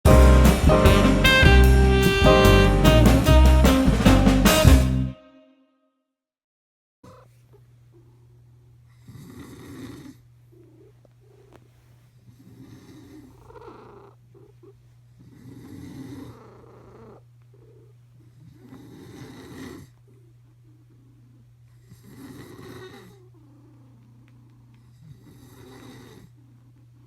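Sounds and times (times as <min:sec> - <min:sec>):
low purr: 0:07.0 - 0:27.0.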